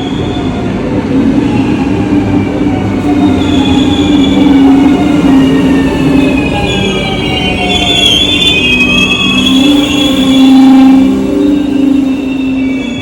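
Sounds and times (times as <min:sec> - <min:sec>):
electric train traction motors whining: 0:00.2 - 0:13.0.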